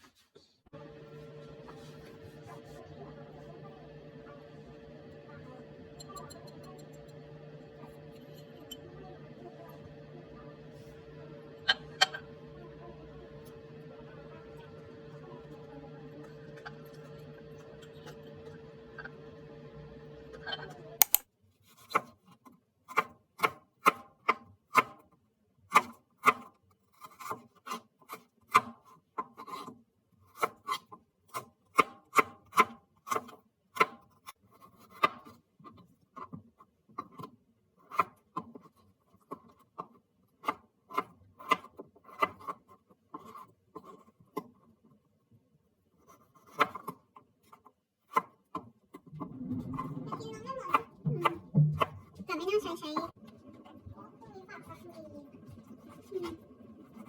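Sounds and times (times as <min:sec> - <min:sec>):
knife chopping on cutting board: 0:21.0 - 0:21.2.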